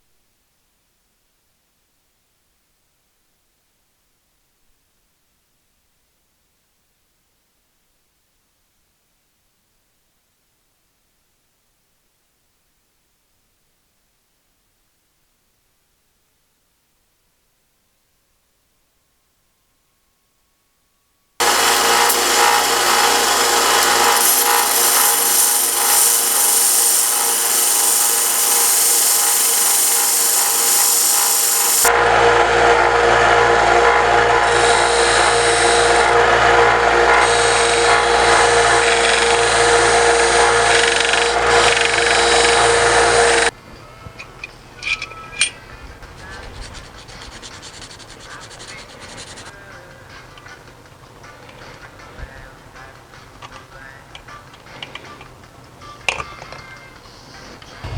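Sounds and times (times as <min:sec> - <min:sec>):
power tool grinding brass: 0:21.4 - 0:31.9, 0:37.2 - 0:43.5.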